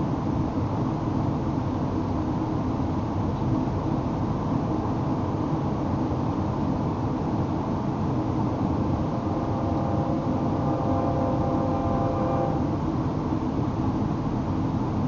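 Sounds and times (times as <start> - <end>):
freight train wagons rumbling: 6.1 - 15.0
faint high whine: 7.0 - 13.6.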